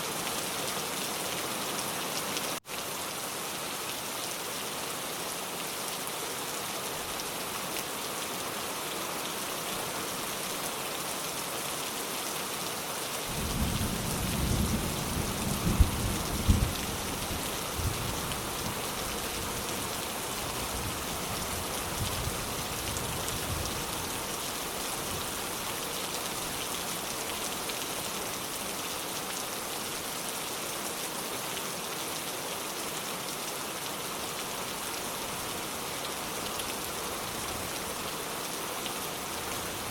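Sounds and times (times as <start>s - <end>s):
steady rain: 0.0s - 39.9s
thunder rumble and cracks: 13.3s - 16.8s.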